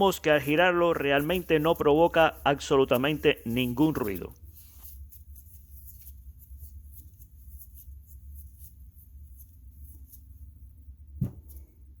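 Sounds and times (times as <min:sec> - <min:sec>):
sharp knock: 0:11.2 - 0:11.5.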